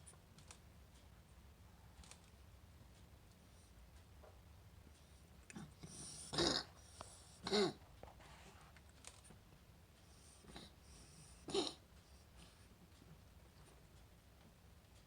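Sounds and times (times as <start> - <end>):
wheezy coughs: 5.9 - 6.8, 7.4 - 7.8, 11.4 - 11.8.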